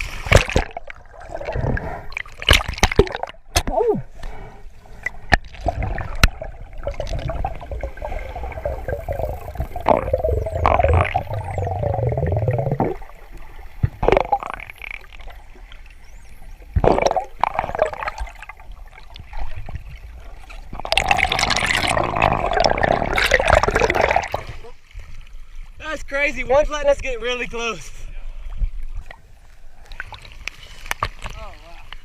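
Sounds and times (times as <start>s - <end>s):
sharp splashes: 0.0s - 3.8s
water rushing and gurgling: 0.0s - 24.9s.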